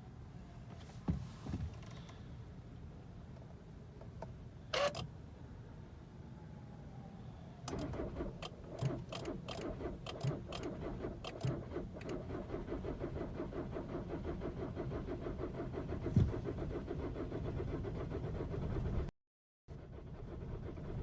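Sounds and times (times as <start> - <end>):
thump: 0.8 - 1.9, 16.1 - 16.4
diesel engine cranking on starter: 7.7 - 19.1, 19.7 - 21.0.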